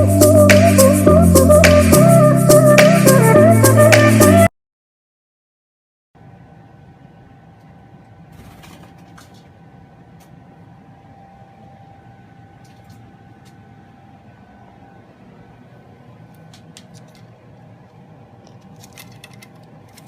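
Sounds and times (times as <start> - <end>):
low mechanical hum: 6.2 - 20.0
faint high whine: 9.6 - 16.6.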